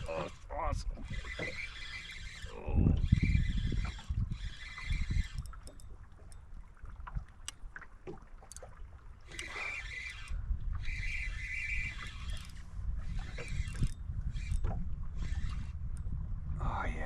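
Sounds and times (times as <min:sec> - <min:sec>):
fishing reel drag buzzing: 0:00.0 - 0:06.5, 0:09.2 - 0:16.2
wind rumble: 0:00.0 - 0:07.4, 0:09.8 - 0:17.0
boat noise: 0:00.0 - 0:17.0.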